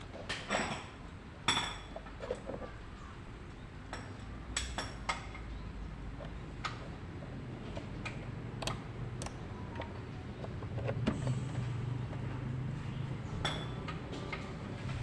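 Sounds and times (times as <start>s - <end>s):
clicks and knocks of car work: 6.2s - 12.4s.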